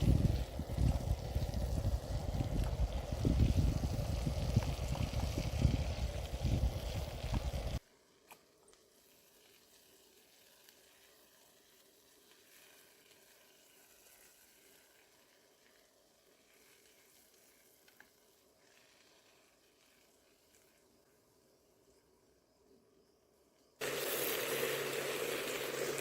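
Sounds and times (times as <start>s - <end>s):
food sizzling in a pan: 0.0s - 7.8s, 8.8s - 20.8s, 23.8s - 26.0s
small ticks: 16.5s - 21.2s.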